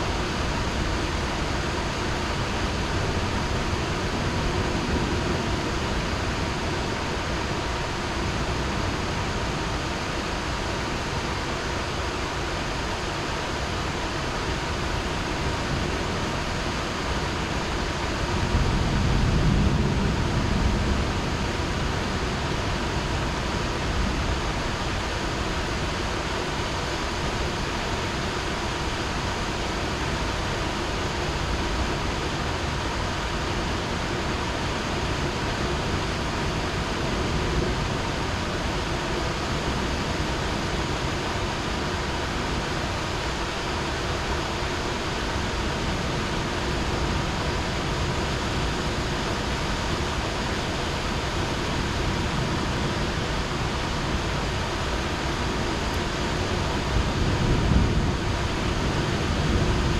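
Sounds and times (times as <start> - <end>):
heavy rain falling: 0.0 - 59.9
thunder rumble: 18.3 - 24.7, 55.4 - 59.9.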